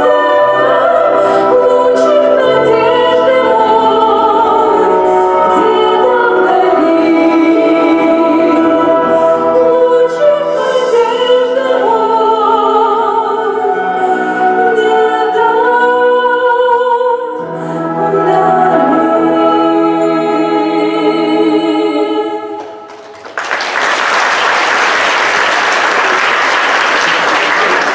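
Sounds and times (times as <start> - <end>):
person singing show tune with music: 0.0 - 23.0
audience applause: 22.9 - 27.9.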